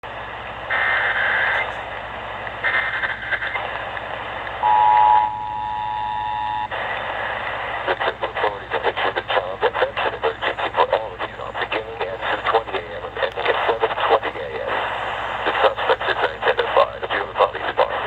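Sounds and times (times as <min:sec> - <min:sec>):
radio static: 0:00.0 - 0:18.0
two-tone attention signal: 0:04.6 - 0:06.7.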